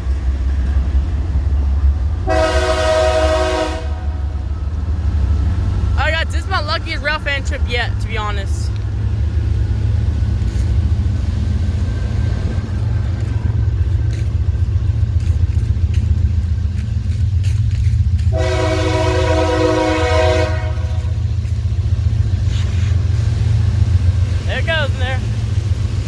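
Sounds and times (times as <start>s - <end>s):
locomotive air horn: 2.2s - 4.3s, 18.2s - 21.3s
low rumble: 7.0s - 26.0s.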